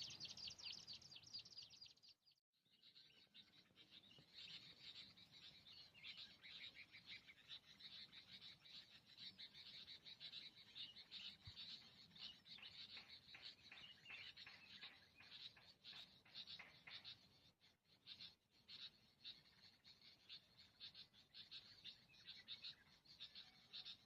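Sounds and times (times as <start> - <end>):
high-pitched chirping chorus: 0.0 - 2.1, 2.8 - 24.0.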